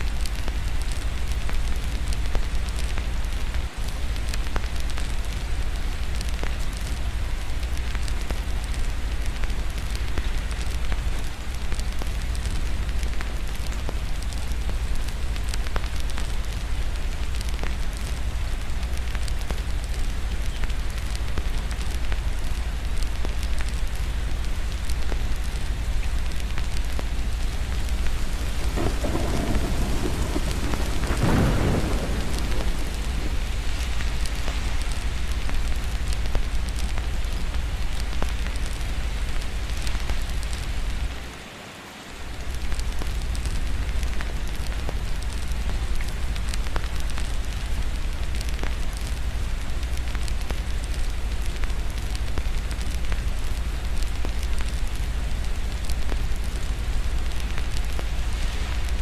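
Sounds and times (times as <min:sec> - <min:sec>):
small crackles: 0:00.0 - 0:41.4, 0:42.2 - 0:59.0
steady rain: 0:00.0 - 0:59.0
thunder rumble: 0:26.4 - 0:38.9.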